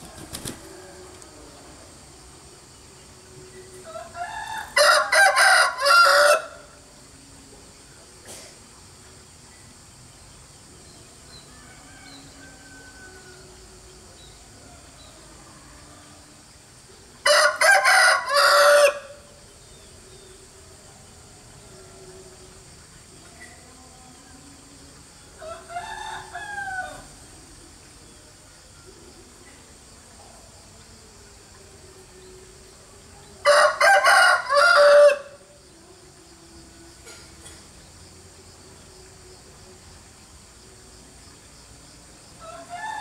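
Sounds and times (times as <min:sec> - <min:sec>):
rooster crowing: 0:00.0 - 0:01.6, 0:03.8 - 0:06.7, 0:11.4 - 0:13.6, 0:17.2 - 0:19.3, 0:25.4 - 0:27.1, 0:33.4 - 0:35.4, 0:42.4 - 0:43.0.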